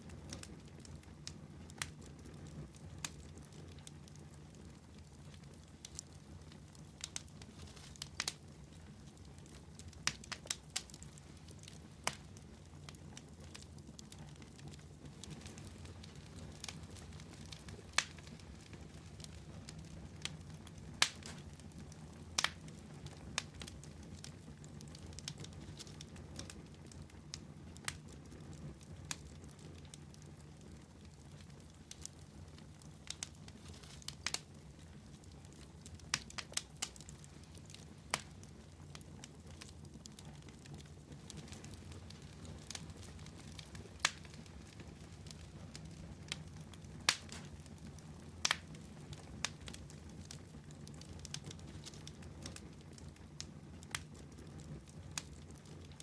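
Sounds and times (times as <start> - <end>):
campfire flames hissing: 0.0 - 56.0
fire crackling and popping: 0.0 - 56.0.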